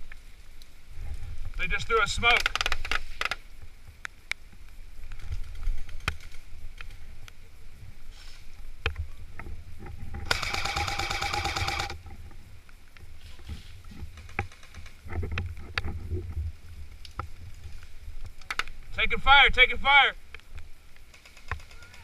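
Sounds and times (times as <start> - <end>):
wind rumble on microphone: 0.3 - 2.3, 3.5 - 10.3, 11.9 - 19.0
airsoft gun full-auto burst: 10.3 - 12.0.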